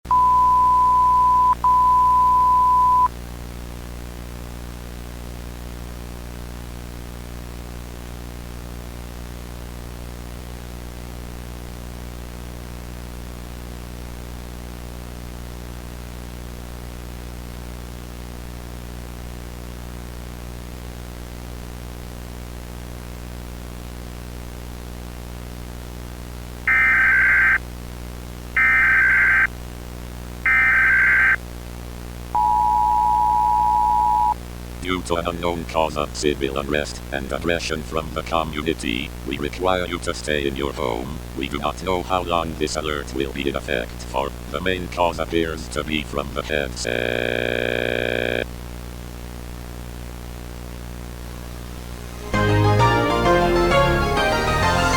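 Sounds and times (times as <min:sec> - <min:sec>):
high test-tone beep: 0:00.1 - 0:03.1, 0:32.4 - 0:34.4
harsh buzzing data bursts: 0:26.7 - 0:27.6, 0:28.6 - 0:29.6, 0:30.5 - 0:31.4, 0:32.4 - 0:48.5
low electrical hum: 0:26.7 - 0:52.1.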